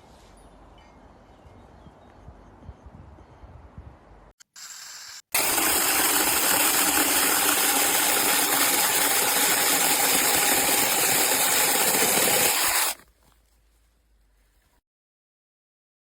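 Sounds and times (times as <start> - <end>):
mini chainsaw running with high whine: 4.4 - 13.0.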